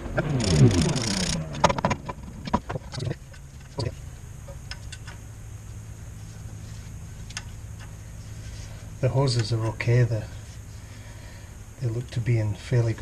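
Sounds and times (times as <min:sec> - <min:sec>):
steady low hum: 0:00.0 - 0:13.0
light ticks of tools: 0:04.6 - 0:05.2, 0:07.2 - 0:08.0.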